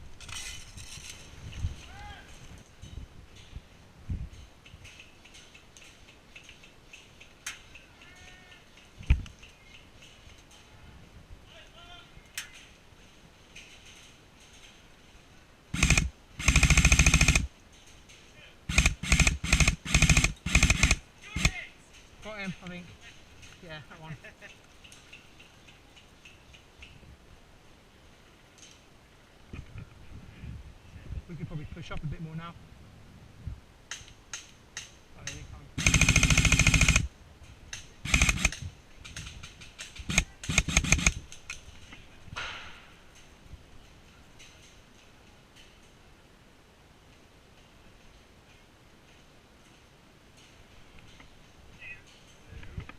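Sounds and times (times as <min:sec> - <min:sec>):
airsoft rifle firing bursts: 0:15.8 - 0:17.5, 0:18.7 - 0:21.6, 0:35.8 - 0:37.1, 0:38.0 - 0:38.6, 0:40.0 - 0:41.2.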